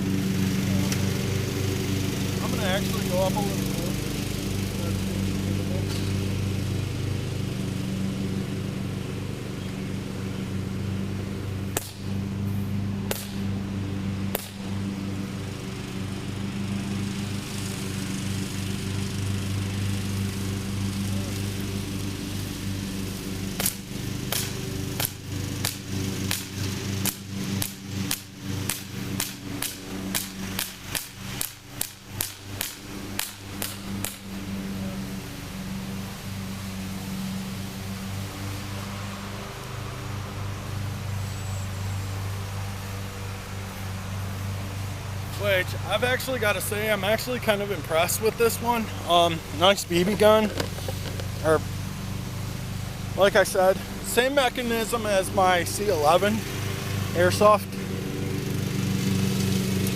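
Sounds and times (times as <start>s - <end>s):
low mechanical hum: 0.0s - 59.9s
bb pistol shots popping: 11.8s - 12.1s, 13.1s - 13.5s, 14.3s - 14.7s, 23.6s - 34.3s.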